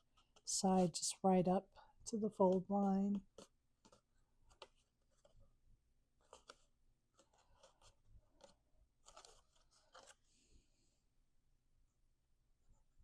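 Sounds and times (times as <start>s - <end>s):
cardstock crackling and rustling: 6.2s - 10.2s.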